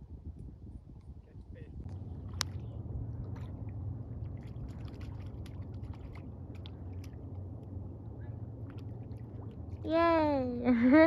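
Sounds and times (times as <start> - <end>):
steady low rumble: 0.0 - 11.0
water lightly splashing: 1.8 - 11.0
small drips and ticks: 4.3 - 7.8.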